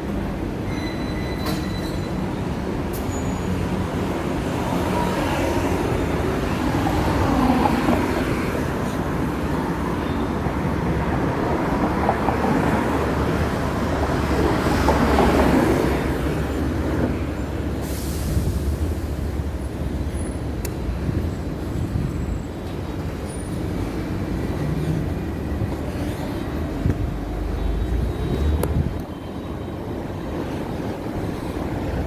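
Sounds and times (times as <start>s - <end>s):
tram rumbling on rails: 0.0s - 32.0s.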